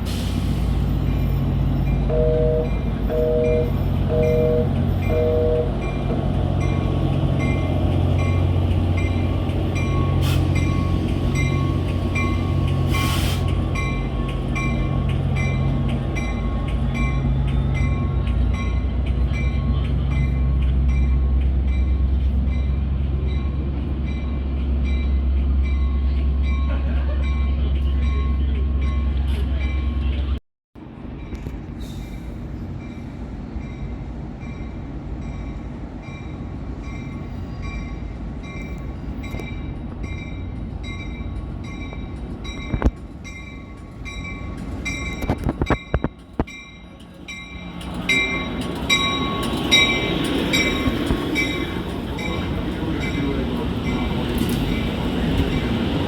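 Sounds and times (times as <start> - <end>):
diesel locomotive engine drone: 0.0 - 56.0
locomotive bell ringing: 1.1 - 30.3, 32.8 - 56.0
short two-note beeps: 2.1 - 5.7.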